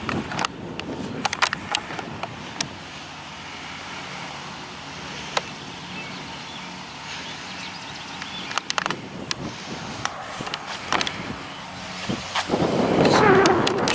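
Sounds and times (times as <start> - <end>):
sharp clicks: 0.0 - 2.7, 8.2 - 9.4, 10.0 - 11.3
road traffic rumble: 0.0 - 13.9.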